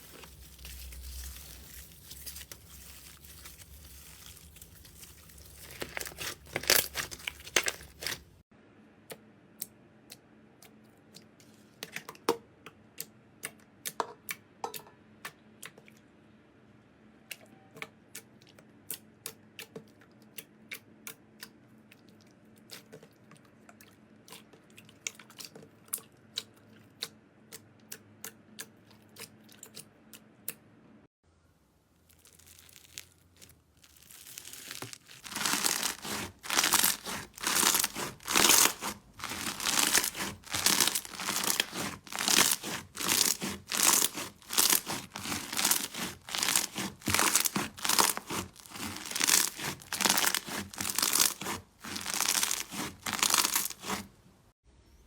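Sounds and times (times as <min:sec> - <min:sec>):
slime squished by hand: 0:00.0 - 0:08.4, 0:32.1 - 0:54.1.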